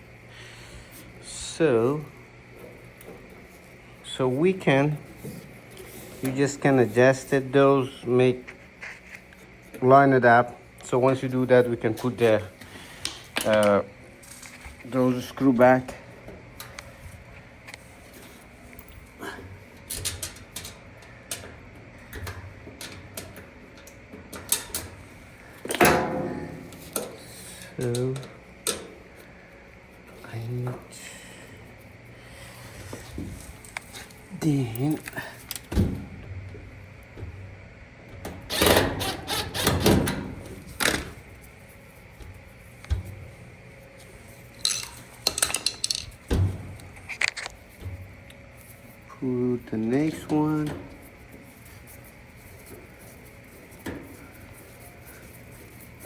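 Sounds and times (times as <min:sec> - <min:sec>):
tool and metal handling noise: 0:25.6 - 0:29.0, 0:44.5 - 0:48.1.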